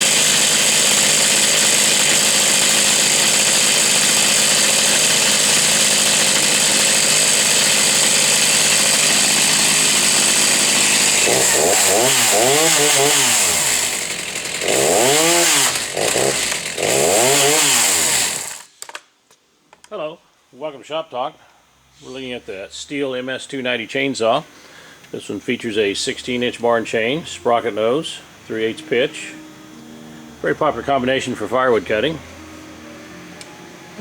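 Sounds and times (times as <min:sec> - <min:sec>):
chainsaw running and revving: 0:00.0 - 0:18.7.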